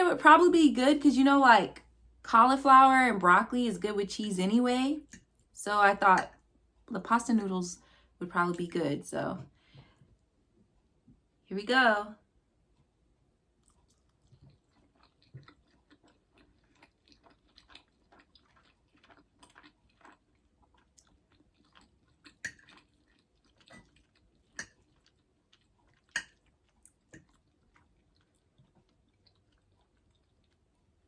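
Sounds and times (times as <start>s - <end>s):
person chewing food: 13.5s - 31.0s.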